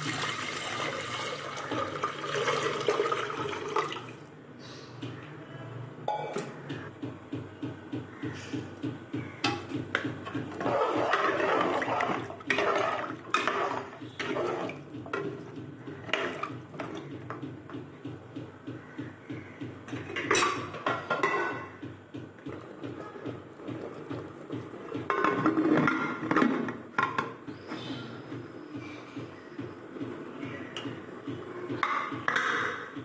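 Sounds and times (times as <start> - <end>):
water pouring and splashing: 0.0 - 4.3.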